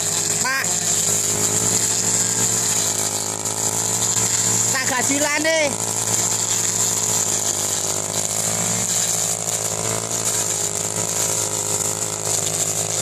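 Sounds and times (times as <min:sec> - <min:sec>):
small engine running steadily: 0:00.0 - 0:13.0.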